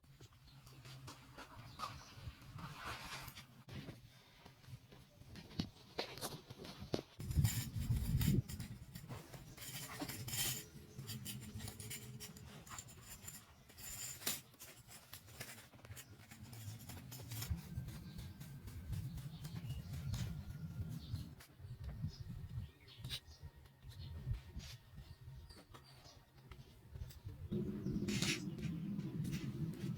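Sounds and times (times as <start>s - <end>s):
scraping and rubbing on pipe fittings: 5.6s - 21.5s, 27.2s - 29.9s
low rumble: 27.5s - 29.9s.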